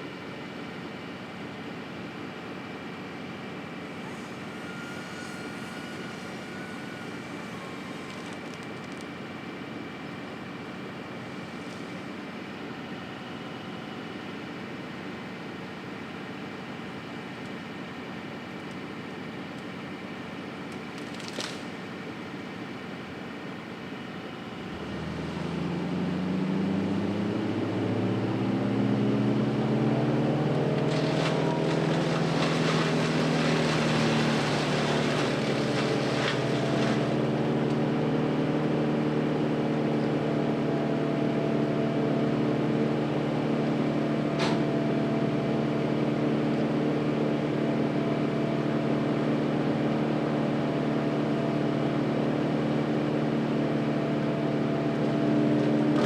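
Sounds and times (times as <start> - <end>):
large engine revving: 24.7 - 40.7.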